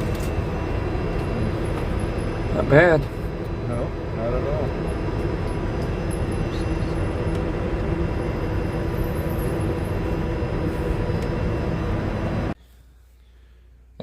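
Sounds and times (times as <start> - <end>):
low outdoor rumble: 0.0 - 14.0.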